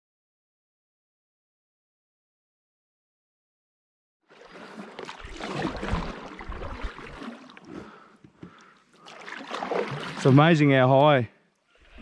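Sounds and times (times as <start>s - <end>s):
river water lapping and splashing: 4.2s - 12.0s.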